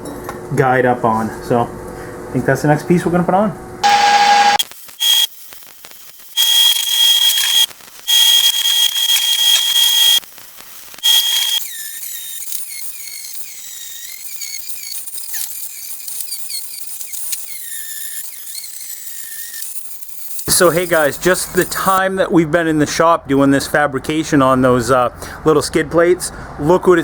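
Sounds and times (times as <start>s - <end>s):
wavering high-pitched tones: 3.8s - 5.3s, 6.3s - 10.2s, 11.0s - 15.0s
steady high whine: 3.8s - 14.5s
welding arc crackling: 3.8s - 22.0s.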